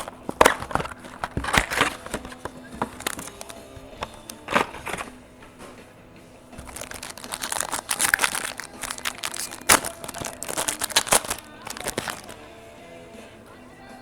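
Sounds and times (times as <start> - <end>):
paper and cardboard rustling: 0.0 - 5.2, 6.6 - 12.5
faint background music: 0.0 - 14.0.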